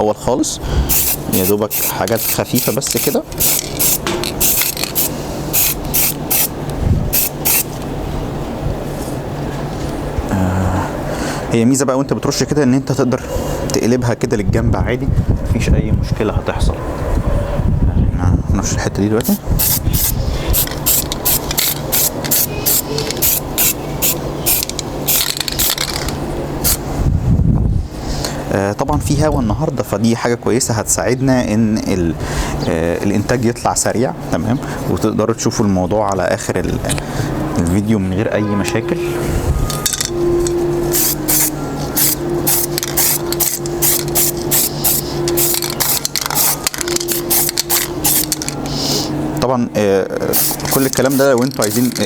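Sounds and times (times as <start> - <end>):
steady low hum: 0.0 - 52.0
spray paint can hissing: 0.9 - 7.8, 19.2 - 26.8, 40.9 - 49.1, 50.3 - 52.0.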